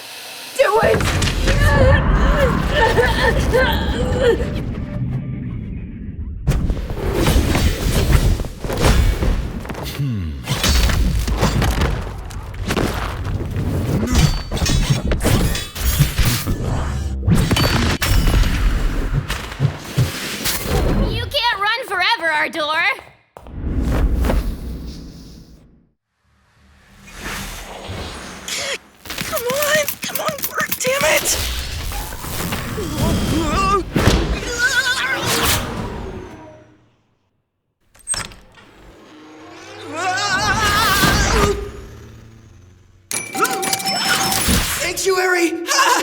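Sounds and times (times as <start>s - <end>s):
low rumble: 1.3s - 7.2s.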